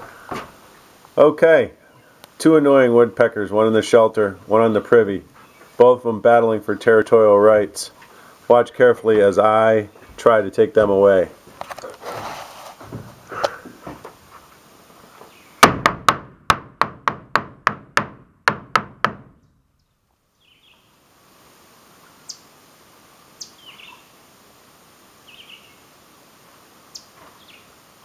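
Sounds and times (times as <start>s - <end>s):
sharp knocks on wood: 15.6s - 19.4s
short bird calls: 23.4s - 24.1s.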